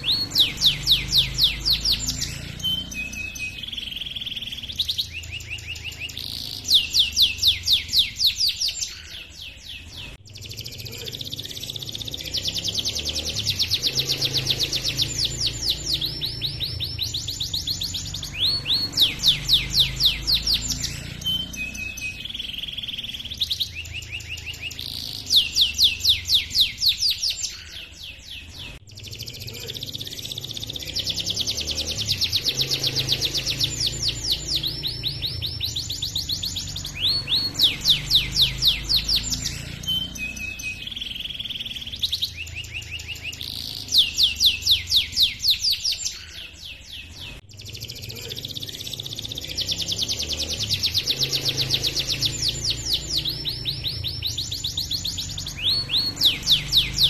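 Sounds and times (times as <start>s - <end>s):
canary singing: 0.0s - 57.0s.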